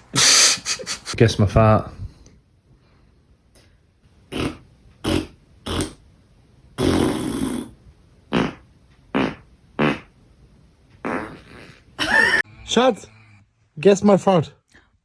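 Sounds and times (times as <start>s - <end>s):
fart sounds: 4.3s - 6.0s, 6.8s - 10.1s, 11.0s - 12.0s.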